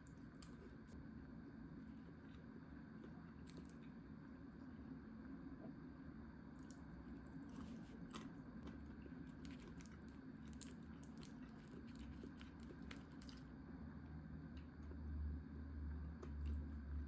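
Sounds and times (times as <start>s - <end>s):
low steady hum: 0.0s - 17.0s
chewing clicks and crunches: 3.0s - 4.0s, 6.6s - 13.6s.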